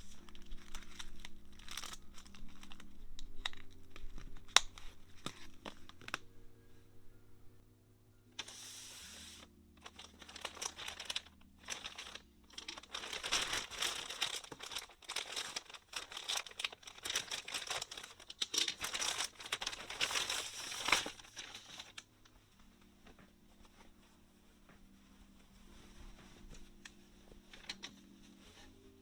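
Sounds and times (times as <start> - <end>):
packaging tearing: 0.0 - 6.3, 9.8 - 22.0
packaging crinkling and rustling: 0.0 - 6.4, 8.4 - 24.0, 25.7 - 28.7.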